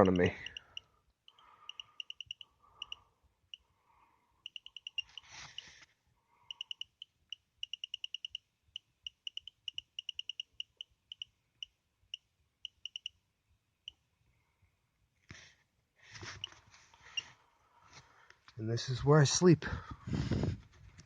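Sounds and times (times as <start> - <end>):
high electronic pips: 0.2 - 0.8, 1.7 - 2.4, 4.5 - 5.3.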